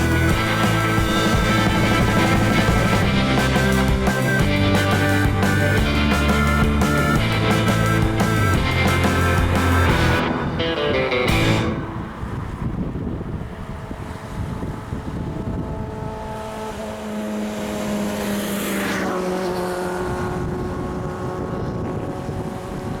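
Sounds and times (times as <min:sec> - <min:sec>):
wind buffeting microphone: 0:00.0 - 0:18.4, 0:19.1 - 0:23.0
outboard motor passing: 0:00.0 - 0:23.0.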